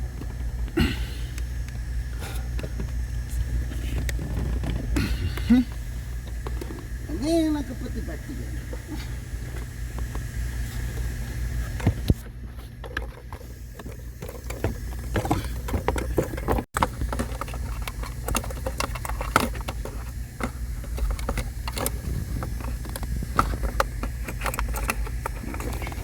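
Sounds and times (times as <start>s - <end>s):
steady low hum: 0.0s - 26.0s
parts clicking and knocking: 2.5s - 7.0s, 11.8s - 26.0s.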